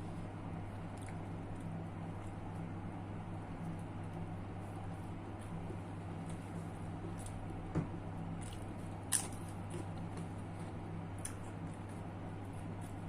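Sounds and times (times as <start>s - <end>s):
steady low hum: 0.0s - 13.0s
person chewing food: 0.8s - 2.6s, 8.2s - 13.0s.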